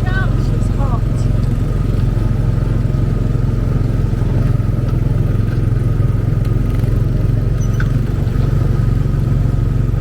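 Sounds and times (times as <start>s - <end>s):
small gasoline engine droning: 0.0s - 10.0s.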